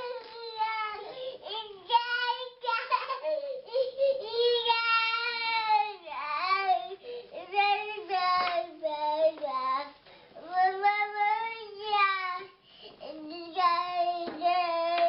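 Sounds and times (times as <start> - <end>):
child crying: 0.0 - 6.7.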